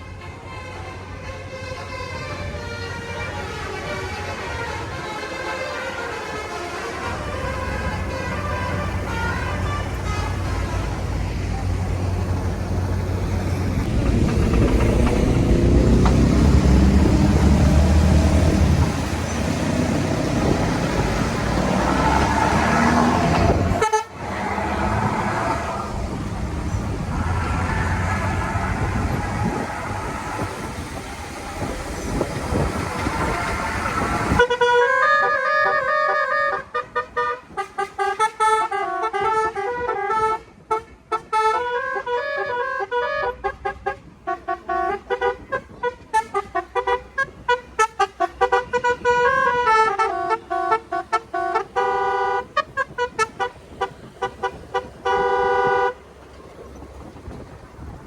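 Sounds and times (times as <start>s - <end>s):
multi-tone horn playing tune: 0.0s - 11.7s, 17.0s - 24.3s, 33.0s - 56.1s
moving vehicle rush: 0.0s - 58.0s.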